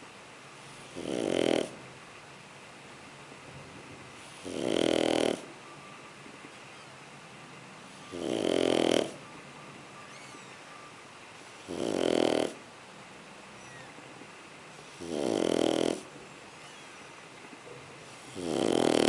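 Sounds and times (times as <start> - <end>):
puppy snoring: 0.6 - 1.8, 4.2 - 5.6, 7.9 - 9.2, 11.5 - 12.6, 14.7 - 16.9, 18.0 - 19.0.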